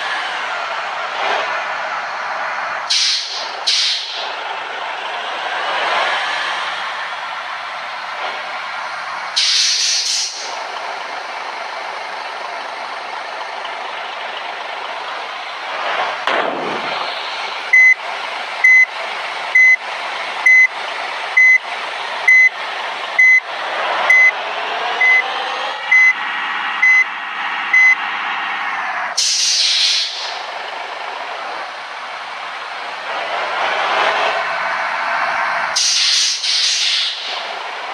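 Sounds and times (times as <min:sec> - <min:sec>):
diesel engine running: 0:00.0 - 0:37.9
reversing alarm beeps: 0:17.7 - 0:18.0, 0:18.6 - 0:18.9, 0:19.6 - 0:19.8, 0:20.4 - 0:20.7, 0:21.4 - 0:21.6, 0:22.3 - 0:22.5, 0:23.2 - 0:23.5, 0:24.1 - 0:24.4, 0:25.0 - 0:25.3, 0:25.9 - 0:26.2, 0:26.8 - 0:27.1, 0:27.7 - 0:28.0.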